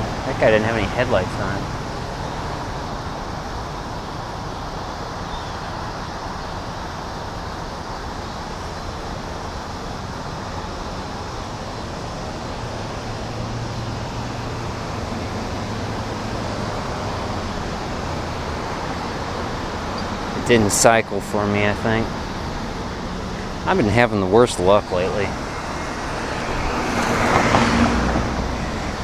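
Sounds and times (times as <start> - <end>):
traffic rushing: 0.0 - 29.0
vehicle engine low hum: 0.0 - 29.0.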